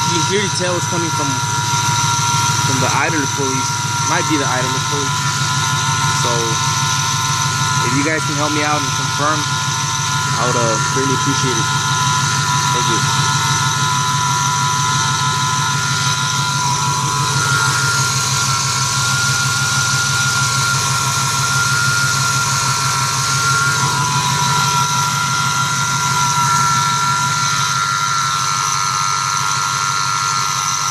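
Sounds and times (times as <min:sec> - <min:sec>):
high-pitched whine: 0:00.0 - 0:30.9.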